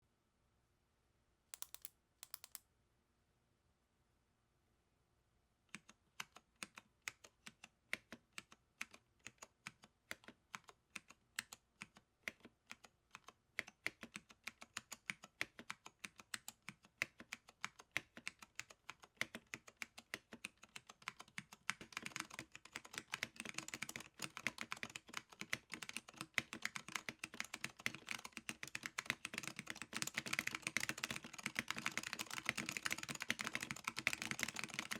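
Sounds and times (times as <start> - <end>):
mechanical keyboard typing: 1.6 - 2.6, 5.7 - 34.9.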